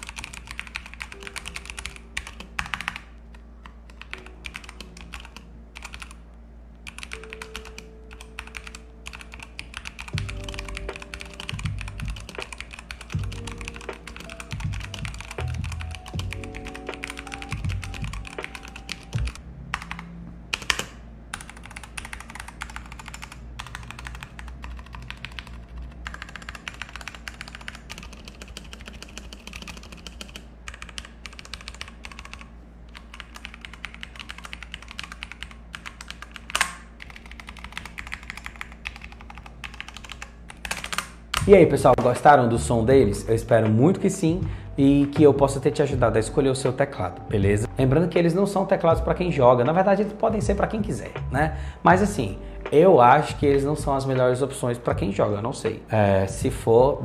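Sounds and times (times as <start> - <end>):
mechanical keyboard typing: 0.0 - 3.1, 3.9 - 6.2, 6.8 - 41.6.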